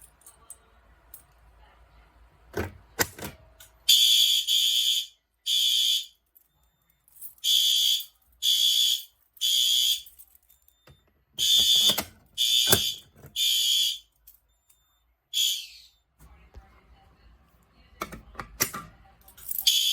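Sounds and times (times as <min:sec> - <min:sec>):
fire alarm horn blasts: 0:03.9 - 0:06.2, 0:07.4 - 0:10.1, 0:11.4 - 0:14.1, 0:15.3 - 0:16.0, 0:19.7 - 0:19.9.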